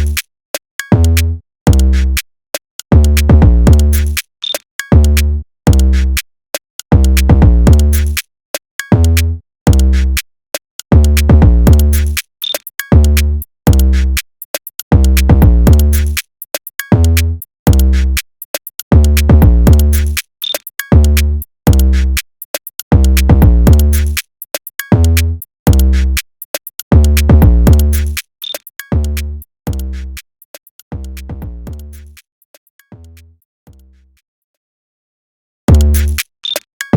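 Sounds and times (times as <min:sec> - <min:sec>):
hip-hop beat: 0:00.0 - 0:00.2, 0:03.0 - 0:04.2, 0:07.0 - 0:08.2, 0:11.0 - 0:32.2, 0:35.7 - 0:36.6
hi-hat ticks: 0:00.0 - 0:02.2, 0:02.8 - 0:06.2, 0:06.8 - 0:10.2, 0:10.8 - 0:33.8, 0:35.7 - 0:36.9
booming bass notes: 0:27.0 - 0:28.1, 0:30.9 - 0:32.0, 0:35.7 - 0:36.2.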